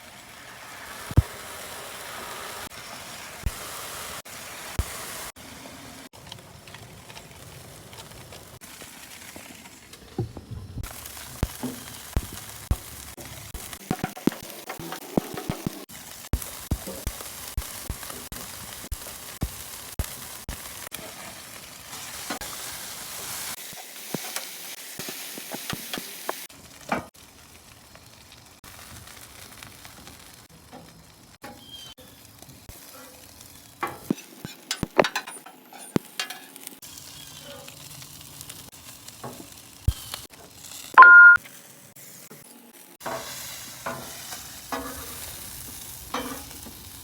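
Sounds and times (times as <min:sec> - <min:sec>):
food sizzling on a griddle: 0:00.0 - 0:47.0
loud two-note tone: 0:41.0 - 0:41.4.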